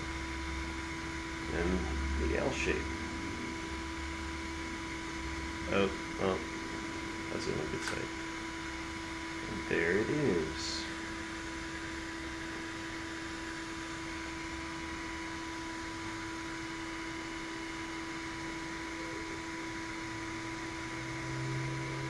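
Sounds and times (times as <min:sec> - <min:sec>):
low hum: 0:00.0 - 0:15.6
fan hum and hiss: 0:00.0 - 0:22.0.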